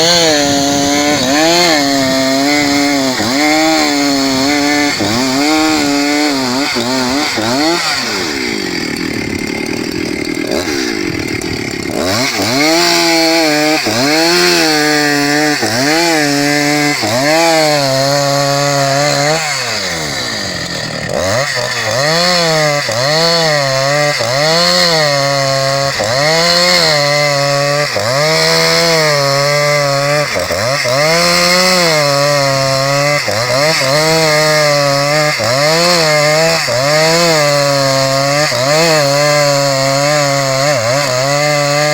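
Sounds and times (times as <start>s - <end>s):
chainsaw cutting log: 0.0s - 41.9s.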